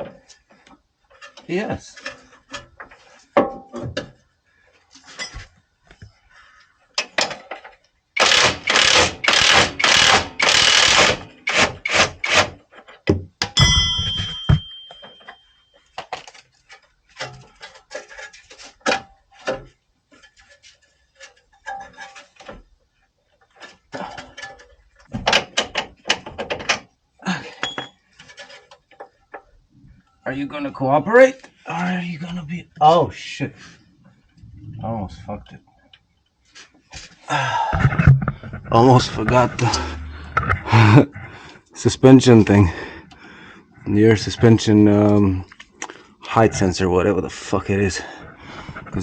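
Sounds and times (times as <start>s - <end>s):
hand tools clanking on metal: 13.4s - 15.5s, 27.5s - 28.6s
hard metal blow ringing: 13.6s - 15.1s.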